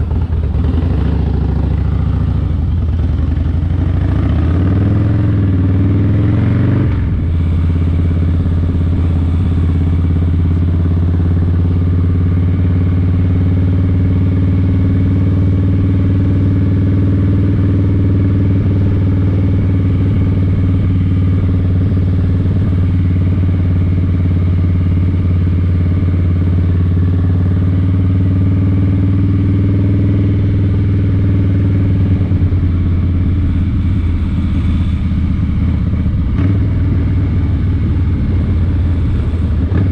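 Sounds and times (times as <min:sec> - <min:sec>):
engine running: 0:00.0 - 0:39.9.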